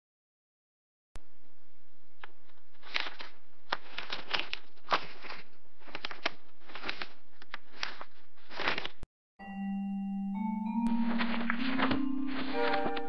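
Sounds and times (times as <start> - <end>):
paper crinkling: 2.4 - 9.0, 10.9 - 13.0.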